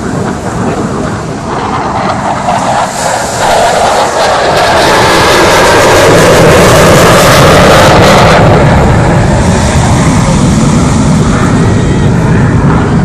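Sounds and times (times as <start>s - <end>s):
jet passing loud and close: 0.0s - 13.0s.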